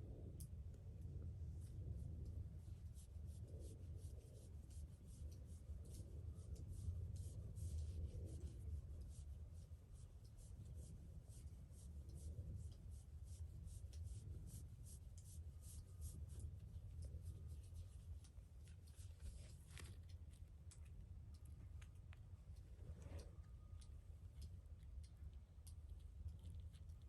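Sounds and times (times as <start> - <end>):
low steady rumble: 0.0 - 27.0
cat fur rubbing against hand: 2.6 - 20.1.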